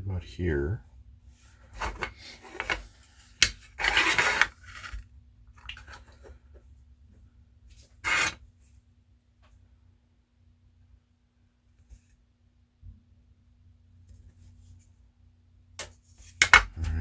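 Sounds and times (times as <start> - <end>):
faint steady hum: 0.0 - 17.0
plastic parts scraping: 1.7 - 5.0, 8.0 - 8.4.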